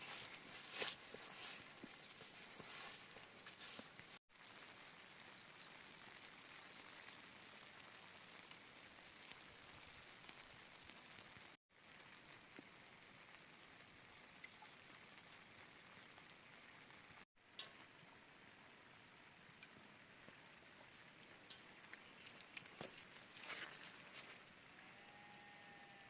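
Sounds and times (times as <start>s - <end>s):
faint rain: 0.0s - 26.0s
drips ticking: 19.5s - 23.5s.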